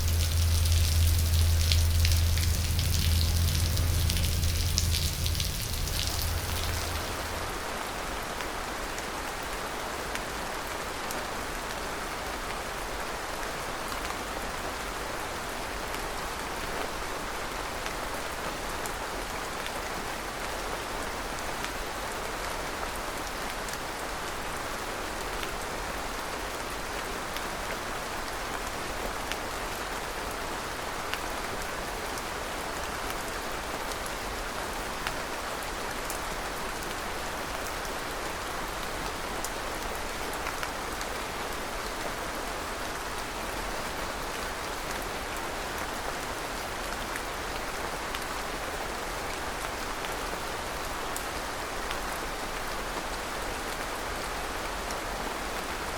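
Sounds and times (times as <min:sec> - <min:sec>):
raindrops ticking on surfaces: 0:00.0 - 0:07.6
steady rain falling: 0:00.0 - 0:55.9.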